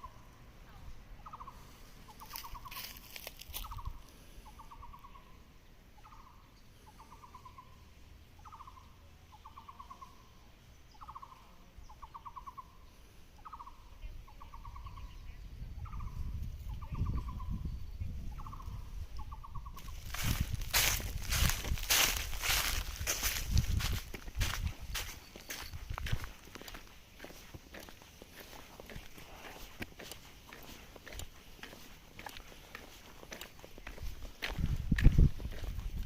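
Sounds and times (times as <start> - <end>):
rustling or footsteps: 2.1 - 4.1, 19.8 - 36.0.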